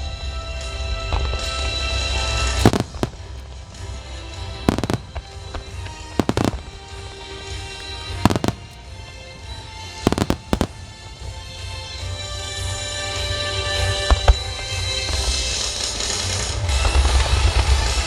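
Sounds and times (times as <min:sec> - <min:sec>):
music: 0:00.0 - 0:18.0
fireworks bursting: 0:01.4 - 0:12.5.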